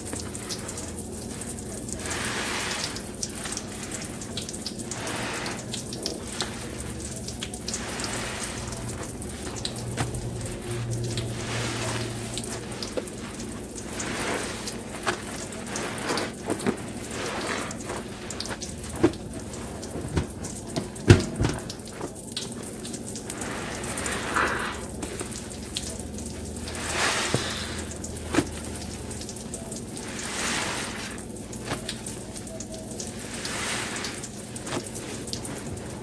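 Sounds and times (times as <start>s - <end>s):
sponge squelching: 0.0s - 36.0s.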